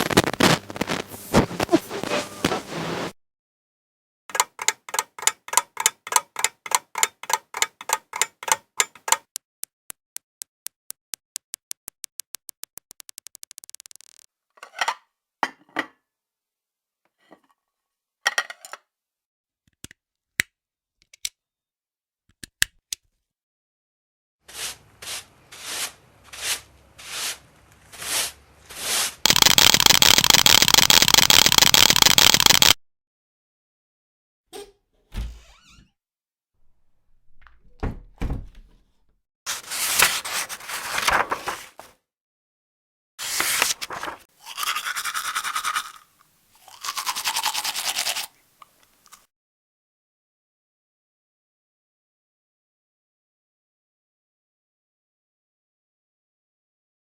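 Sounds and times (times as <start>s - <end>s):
regular clicking: 4.3s - 14.3s, 29.3s - 32.8s.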